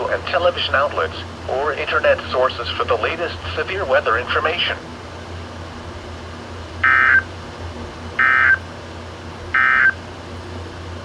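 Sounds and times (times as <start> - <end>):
digital screech bursts: 6.8 - 7.2, 8.2 - 8.6.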